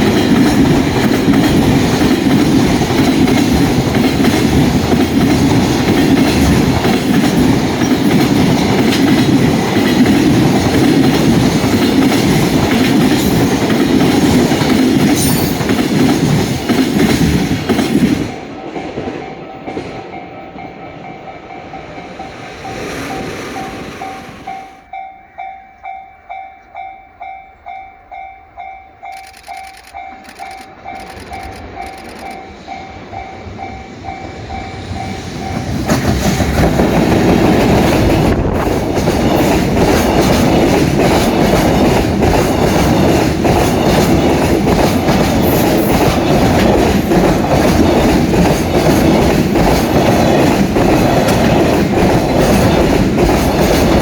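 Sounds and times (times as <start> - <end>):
level-crossing warning bell: 18.3 - 35.9.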